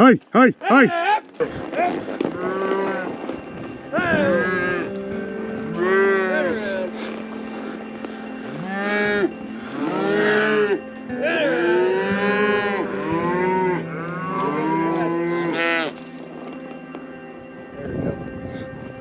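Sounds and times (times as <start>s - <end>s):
cattle mooing: 1.4s - 16.2s.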